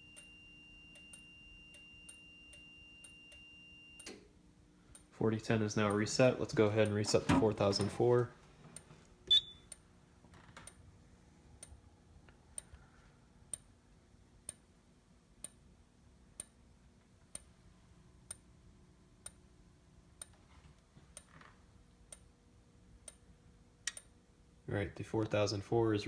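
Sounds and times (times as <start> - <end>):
fire alarm strobe clicks: 0.0 - 4.3, 8.8 - 9.8, 23.9 - 24.1.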